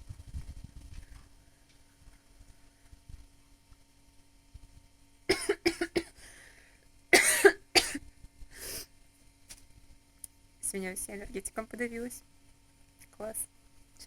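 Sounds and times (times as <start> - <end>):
woman coughing: 5.3 - 6.2, 7.2 - 8.0.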